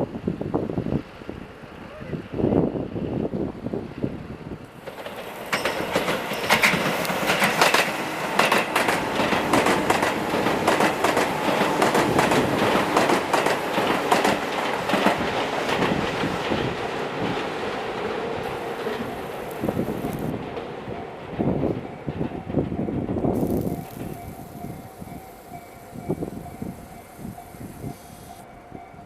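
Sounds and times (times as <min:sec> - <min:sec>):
train passing rush: 0:00.0 - 0:29.0
wheels clicking over rail joints: 0:04.7 - 0:28.5.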